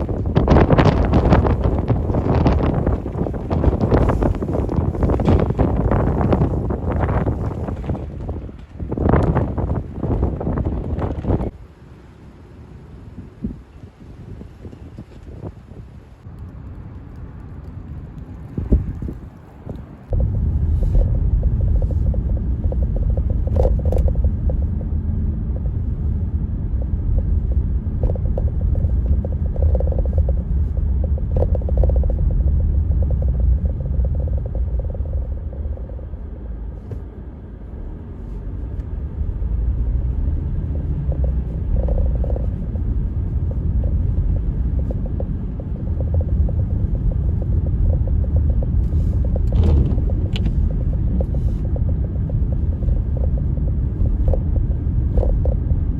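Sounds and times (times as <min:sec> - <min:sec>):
wind buffeting microphone: 0:00.0 - 0:55.9.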